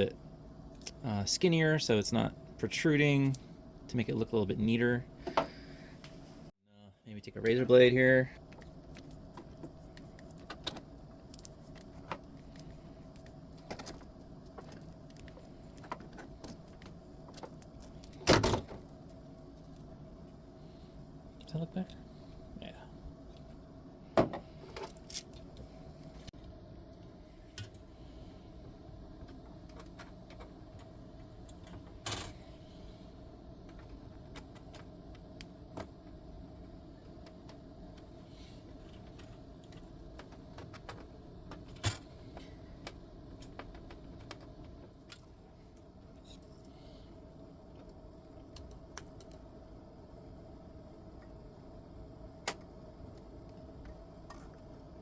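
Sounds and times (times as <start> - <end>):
faint steady hum: 0.0 - 55.0
small parts clicking and tapping: 8.4 - 19.9, 47.7 - 49.5.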